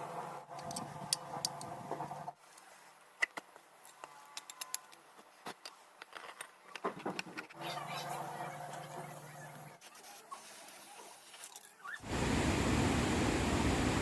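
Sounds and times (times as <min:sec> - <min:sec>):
mechanical hum: 0:00.0 - 0:02.4, 0:07.5 - 0:09.9, 0:11.9 - 0:14.0.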